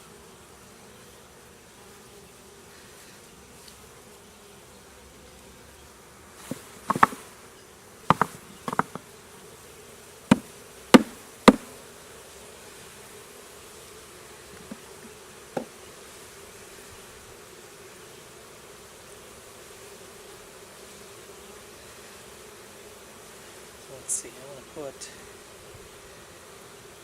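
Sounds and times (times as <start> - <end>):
honeybees buzzing: 0.0 - 27.0
sharp knocks and clacks: 6.9 - 7.2, 8.1 - 9.0, 11.0 - 11.7.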